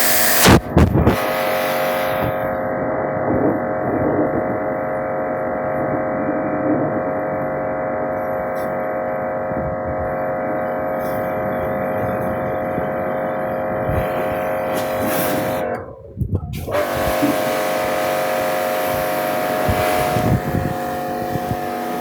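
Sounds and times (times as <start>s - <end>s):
hiss: 0.0s - 0.6s, 1.2s - 2.6s, 13.9s - 15.7s, 16.6s - 22.0s
electric motor humming: 0.0s - 15.9s, 16.7s - 22.0s.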